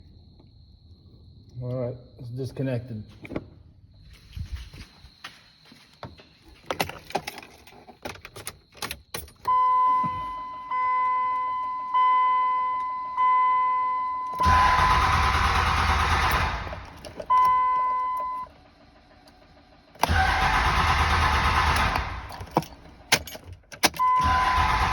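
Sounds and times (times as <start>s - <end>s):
keys jingling: 6.4s - 12.0s, 16.8s - 18.5s, 22.3s - 24.2s
truck warning chime beeping: 9.4s - 15.0s, 17.2s - 19.7s, 23.8s - 24.8s
starter cranking diesel engine: 14.3s - 24.9s.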